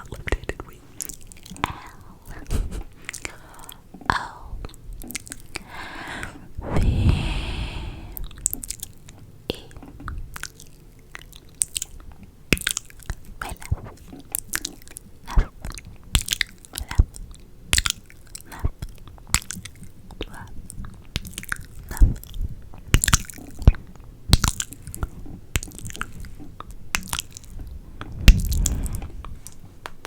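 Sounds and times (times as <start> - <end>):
breathy rush of air: 5.7 - 8.3, 28.1 - 29.4
wet mouth clicks and smacks: 9.8 - 17.1, 17.8 - 30.0.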